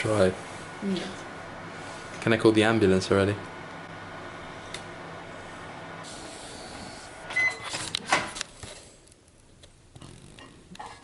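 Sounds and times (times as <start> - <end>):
microwave oven humming: 0.0 - 9.1.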